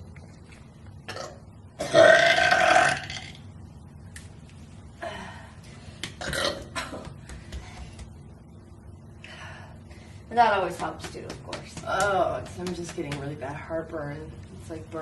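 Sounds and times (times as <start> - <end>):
person burping: 1.1 - 3.4, 6.2 - 7.0.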